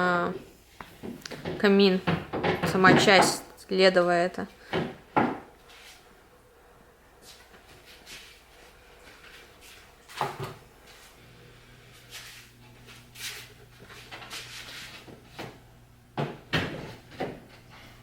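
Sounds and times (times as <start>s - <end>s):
faint steady hum: 0.0s - 18.0s
wooden parts knocking: 1.0s - 3.5s.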